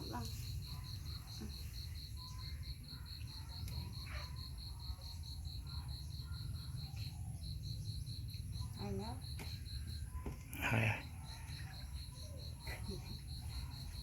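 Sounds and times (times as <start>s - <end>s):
cricket chirping: 0.0s - 14.0s.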